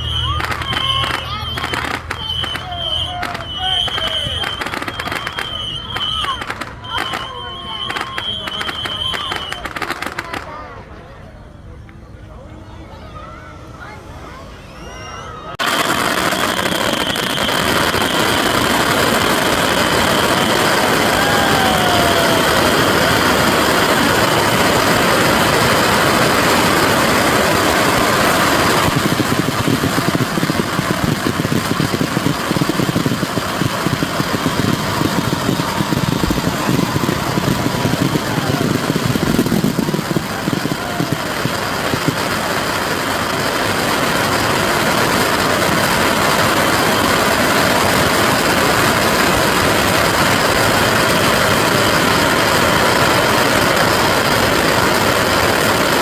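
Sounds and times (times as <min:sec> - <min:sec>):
falling whistles: 0:00.0 - 0:10.0, 0:14.4 - 0:23.3
fireworks rockets crackling hiss: 0:00.0 - 0:10.8, 0:15.6 - 0:56.0.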